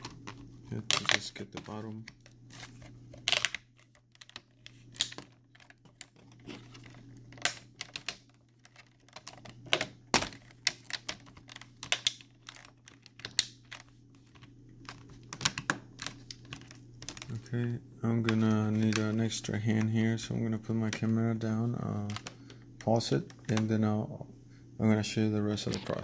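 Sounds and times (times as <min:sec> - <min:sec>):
fingers rubbing and tapping plastic: 0:00.0 - 0:17.4
plastic clips clicking and snapping: 0:03.3 - 0:06.2, 0:06.8 - 0:13.8.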